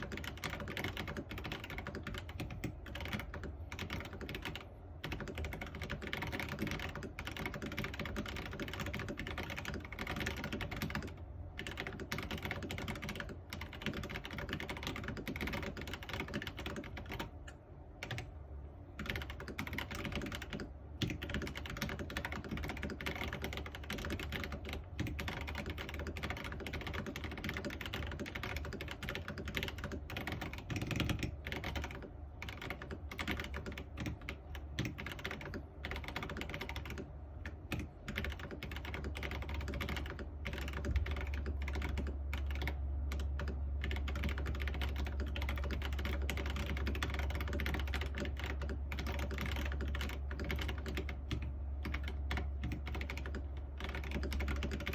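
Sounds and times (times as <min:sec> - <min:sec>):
low steady hum: 0:00.0 - 0:54.9
mechanical keyboard typing: 0:00.0 - 0:54.9.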